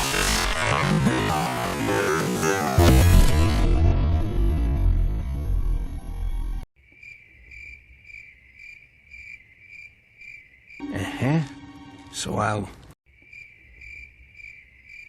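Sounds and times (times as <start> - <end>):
crickets chirping: 6.8 - 12.0, 13.1 - 15.0
music: 10.8 - 12.6.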